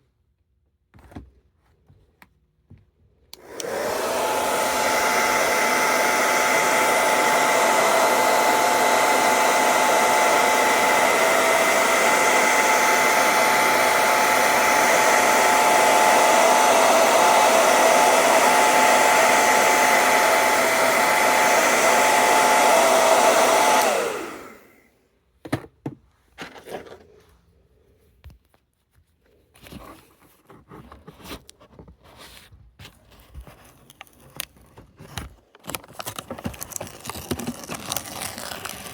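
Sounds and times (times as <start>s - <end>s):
hair dryer blowing: 3.3s - 24.9s, 36.7s - 38.9s.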